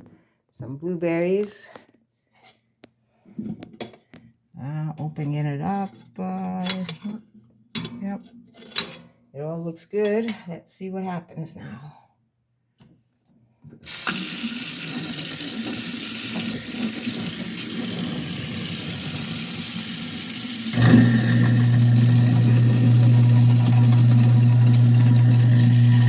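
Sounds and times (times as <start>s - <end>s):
garbage disposal humming: 13.8s - 26.0s
water running into sink: 13.8s - 26.0s.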